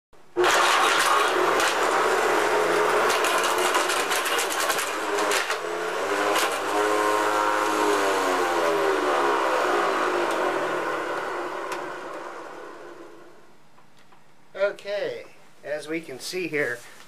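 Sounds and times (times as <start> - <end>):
vacuum cleaner motor whining: 0.4 - 13.5.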